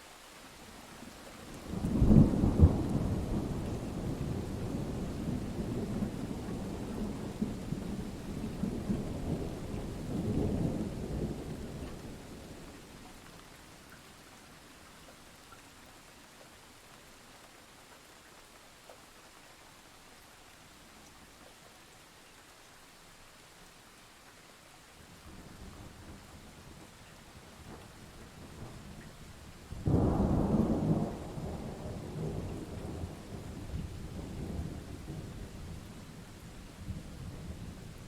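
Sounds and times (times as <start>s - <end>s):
steady rain: 0.0s - 38.0s
thunder crack and rumble: 1.7s - 12.2s, 29.7s - 38.0s.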